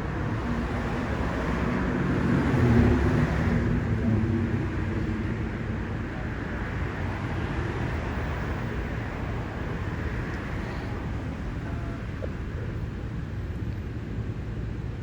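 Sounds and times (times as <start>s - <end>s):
rumble of passing cars: 0.0s - 15.0s.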